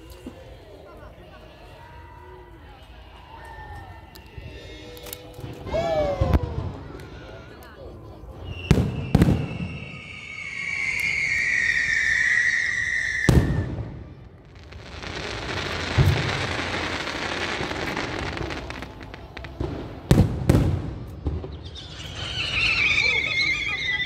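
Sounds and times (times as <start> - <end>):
firework whistle: 8.4 - 14.1, 21.2 - 24.0
firework crackling: 8.4 - 24.0
firework bangs: 8.5 - 23.9.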